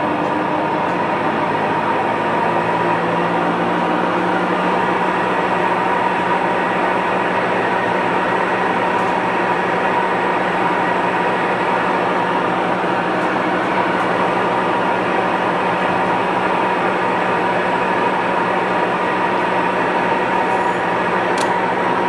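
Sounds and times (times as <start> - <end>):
washing machine spinning with whine: 0.0 - 22.0.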